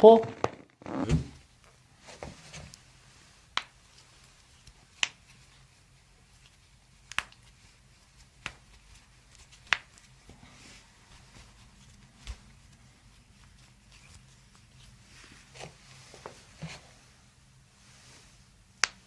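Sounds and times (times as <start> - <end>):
back joints cracking: 0.2 - 1.4.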